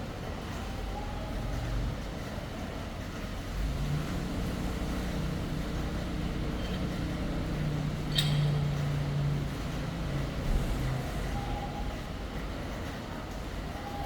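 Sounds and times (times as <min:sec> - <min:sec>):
surface grinder machine hum: 0:04.0 - 0:11.3.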